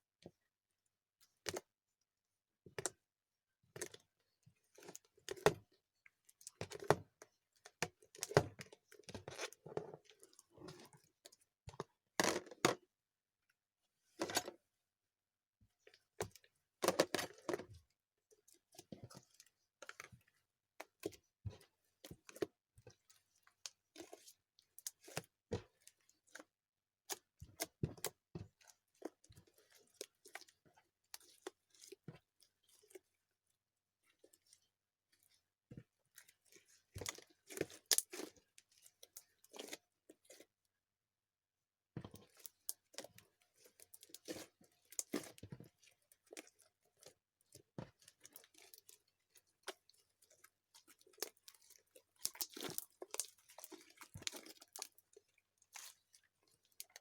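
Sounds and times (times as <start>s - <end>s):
slime squelching and crackling: 49.6s - 56.9s.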